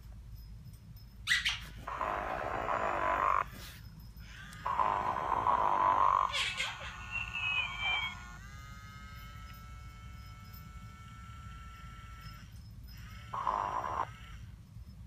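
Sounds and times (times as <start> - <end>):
toy snoring through speaker: 1.8 - 3.6, 4.2 - 8.8, 13.3 - 14.4
short squeaky whistle: 6.7 - 8.2.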